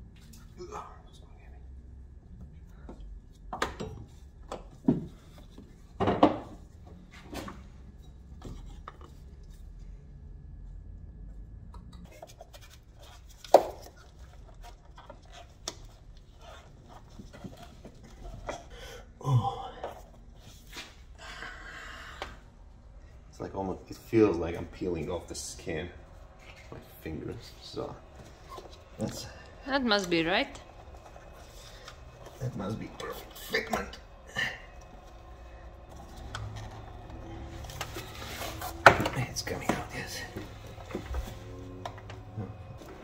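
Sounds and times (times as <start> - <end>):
knocks and rattles of wiring work: 2.3 - 9.6, 11.6 - 18.8, 23.6 - 43.0.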